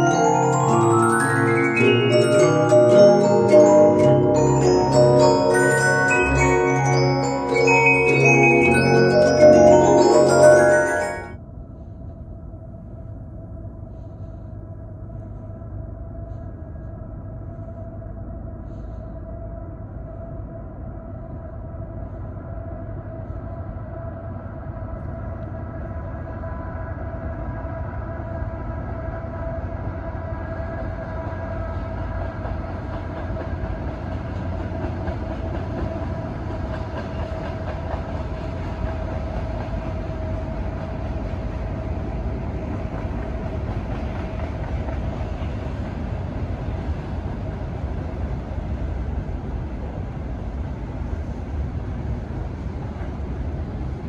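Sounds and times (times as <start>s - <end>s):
freight train rumbling on rails: 0.0s - 11.2s, 22.0s - 54.0s.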